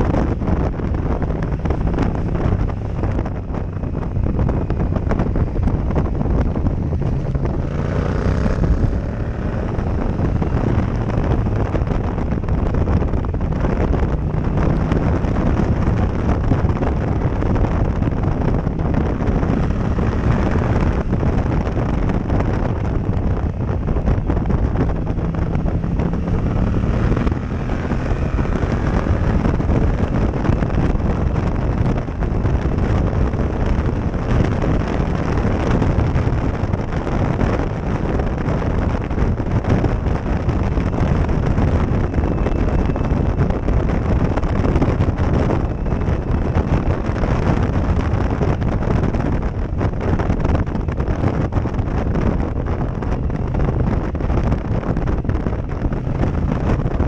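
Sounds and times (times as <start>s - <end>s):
motorcycle engine: 0.0s - 57.0s
wind buffeting microphone: 0.0s - 57.0s.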